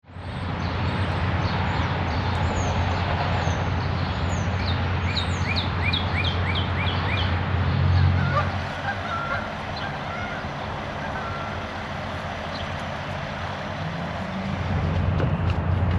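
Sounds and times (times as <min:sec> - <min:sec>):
wind buffeting microphone: 0:00.7 - 0:15.9
bird singing: 0:03.9 - 0:07.4, 0:08.0 - 0:14.6.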